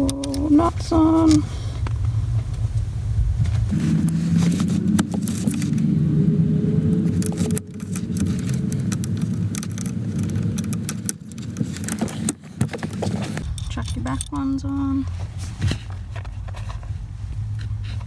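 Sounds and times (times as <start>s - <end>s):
low mechanical hum: 0.0s - 18.0s
metallic clicks of nuts and tools: 7.2s - 14.6s.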